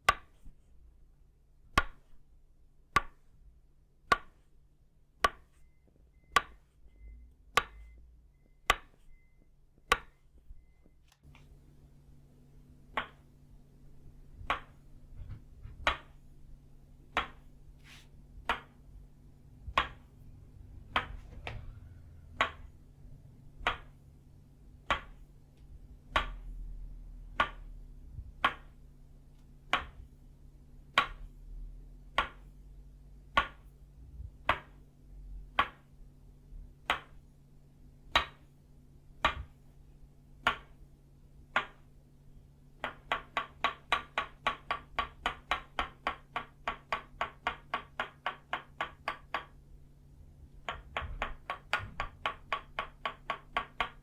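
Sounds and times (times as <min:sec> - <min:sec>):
wooden mallet knocking on wood: 0:04.0 - 0:04.5, 0:05.2 - 0:05.6, 0:06.3 - 0:06.7, 0:07.5 - 0:09.0, 0:09.8 - 0:10.2, 0:12.9 - 0:13.3, 0:14.4 - 0:16.2, 0:17.1 - 0:17.5, 0:18.4 - 0:18.8, 0:19.6 - 0:20.1, 0:20.8 - 0:22.8, 0:23.6 - 0:24.0, 0:24.8 - 0:25.2, 0:26.1 - 0:26.5, 0:27.3 - 0:28.8, 0:29.7 - 0:30.1, 0:33.3 - 0:33.7, 0:34.3 - 0:34.8, 0:35.5 - 0:35.9, 0:38.1 - 0:38.5, 0:39.2 - 0:39.6, 0:40.4 - 0:40.8, 0:41.5 - 0:41.8, 0:42.8 - 0:49.6, 0:50.6 - 0:54.0.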